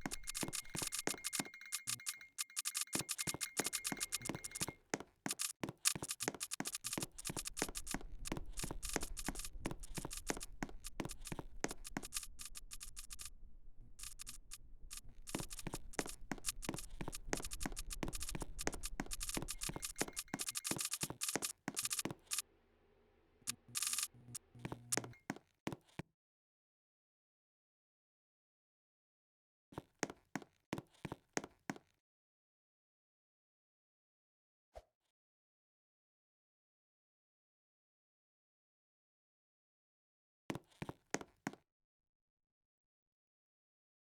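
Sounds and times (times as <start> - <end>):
low hum: 0.0 - 2.2, 6.6 - 25.2
rapid sharp clicking: 0.0 - 22.4, 23.5 - 24.2.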